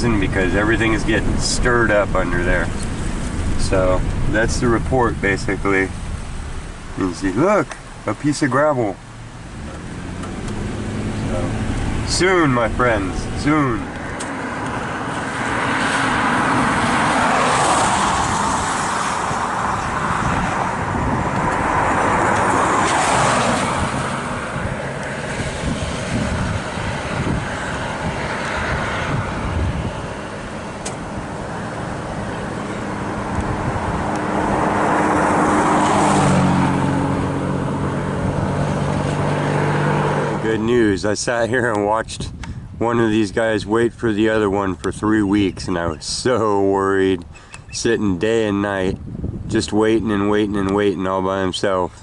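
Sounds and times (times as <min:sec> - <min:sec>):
steady low engine hum: 0:00.0 - 0:17.0
road vehicles passing: 0:00.0 - 0:52.0.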